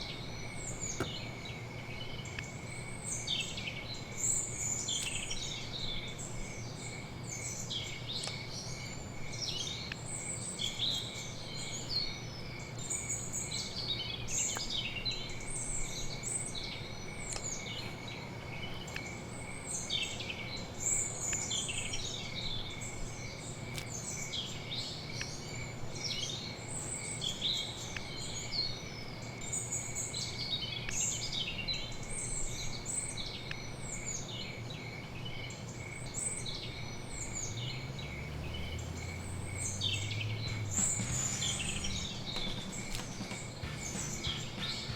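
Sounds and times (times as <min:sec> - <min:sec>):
small birds chirping: 0:00.0 - 0:44.9
low hum: 0:37.2 - 0:44.9
high trill: 0:38.5 - 0:44.9.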